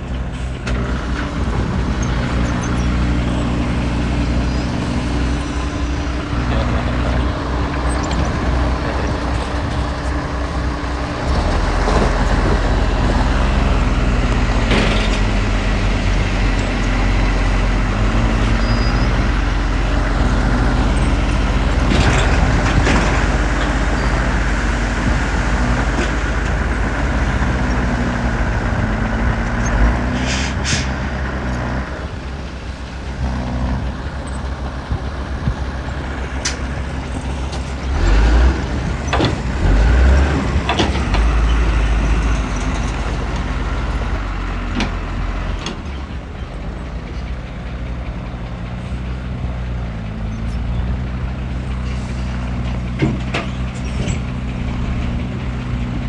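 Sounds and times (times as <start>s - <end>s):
heavy diesel engine revving: 0.0s - 56.0s
sharp knocks and hisses: 30.1s - 31.0s, 51.8s - 54.3s.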